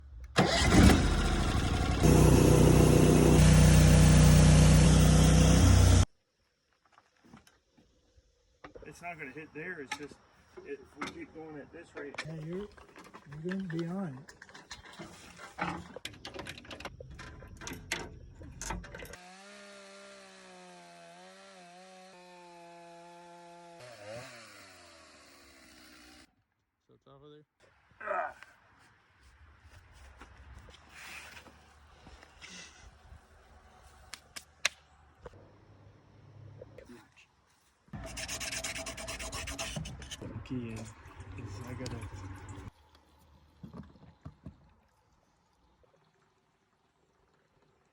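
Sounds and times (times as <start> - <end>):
gas engine running: 0.4 - 6.0
sawmill engine humming: 0.4 - 6.0, 19.2 - 26.3.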